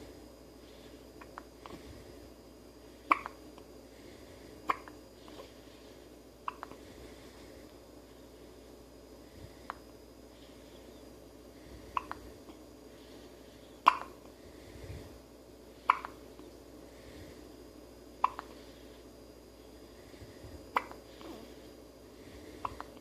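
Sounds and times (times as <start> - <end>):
baby hiccuping: 3.1 - 3.4, 13.8 - 14.2.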